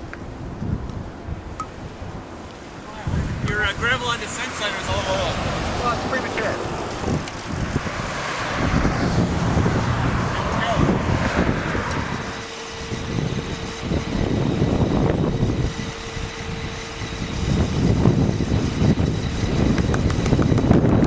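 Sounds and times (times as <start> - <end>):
car road and wind noise: 0.0 - 21.0.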